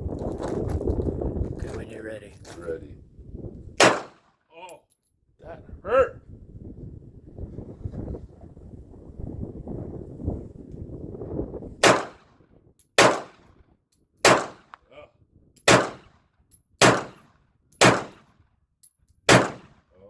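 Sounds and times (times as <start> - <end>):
pistol shots: 3.8 - 4.2, 11.8 - 12.3, 13.0 - 13.4, 14.2 - 14.8, 15.6 - 16.2, 16.8 - 18.3, 19.3 - 19.8.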